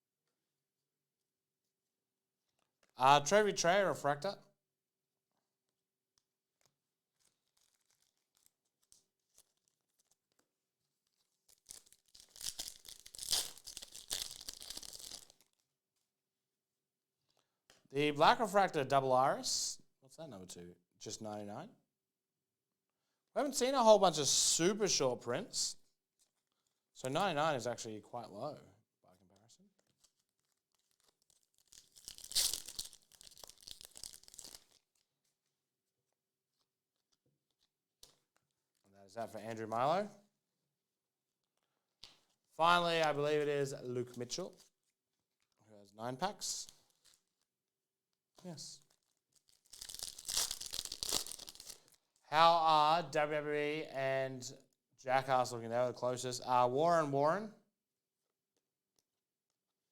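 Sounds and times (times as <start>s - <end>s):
foil wrapper tearing: 6.6s - 15.7s, 29.8s - 35.4s, 48.8s - 52.2s.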